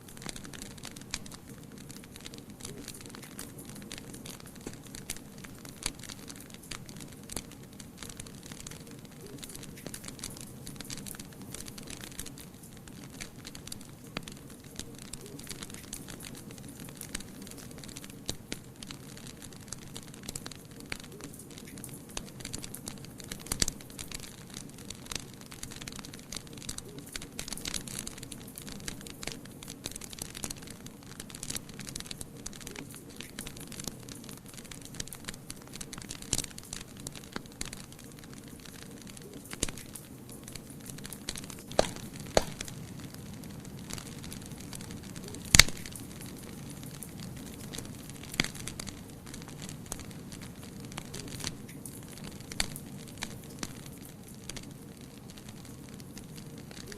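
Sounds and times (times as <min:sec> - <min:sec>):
fire crackling and popping: 0:00.0 - 0:56.9
loud sharp fire pops: 0:41.3 - 0:44.0, 0:45.2 - 0:46.1.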